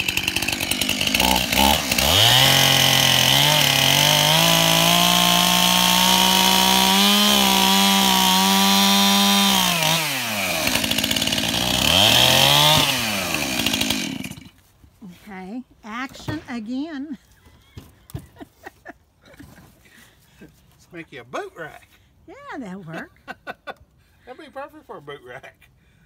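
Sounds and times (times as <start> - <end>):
chainsaw revving: 0.0 - 14.6.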